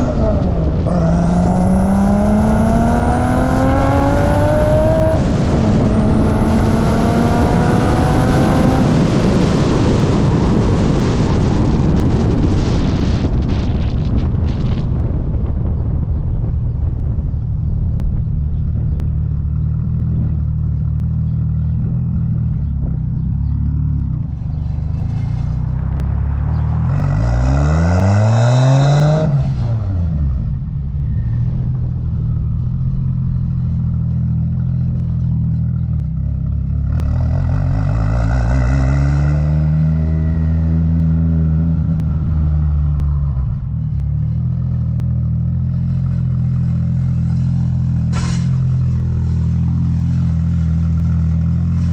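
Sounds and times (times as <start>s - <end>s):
turbocharged car engine revving: 0.0s - 10.2s.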